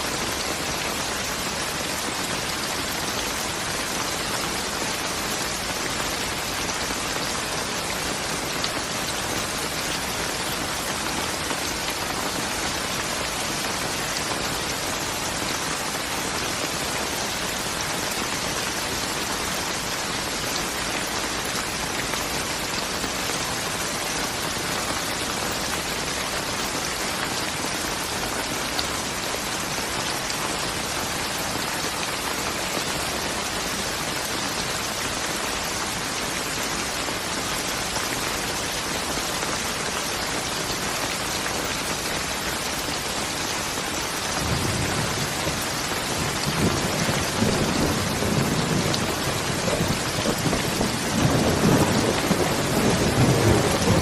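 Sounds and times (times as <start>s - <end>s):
steady rain falling: 0.0s - 54.0s
low rolling thunder rumble: 46.2s - 54.0s.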